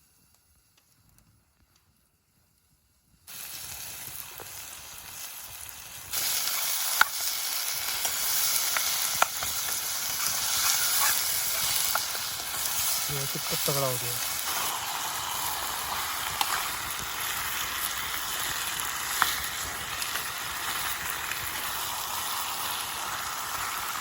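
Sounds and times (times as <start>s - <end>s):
food sizzling in hot oil: 3.3s - 24.0s
oil popping and spitting: 6.1s - 18.4s.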